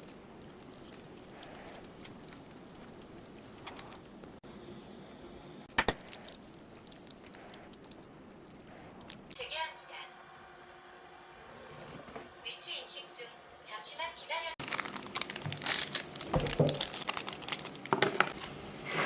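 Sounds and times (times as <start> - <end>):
household objects clicking and knocking: 16.2 - 17.0, 17.9 - 19.0.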